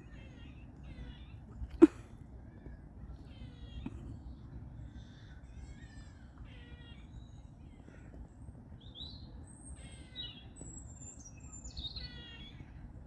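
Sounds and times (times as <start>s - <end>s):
squirrels calling: 0.0s - 8.0s, 11.5s - 12.8s
low background rumble: 0.0s - 13.0s.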